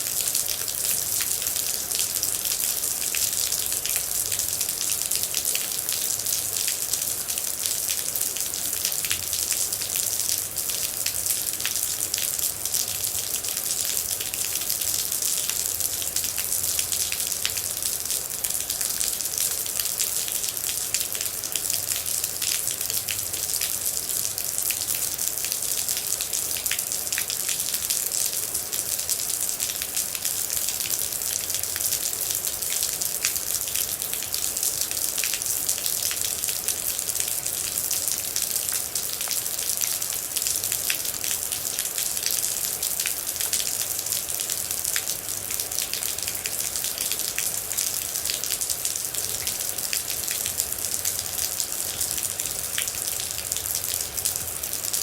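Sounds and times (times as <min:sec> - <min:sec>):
rain droplets ticking on surface: 0:00.1 - 0:55.0.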